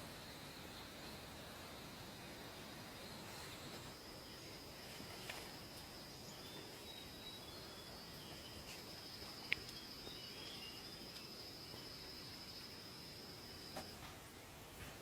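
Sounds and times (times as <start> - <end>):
high-pitched insect trill: 2.7 - 13.9.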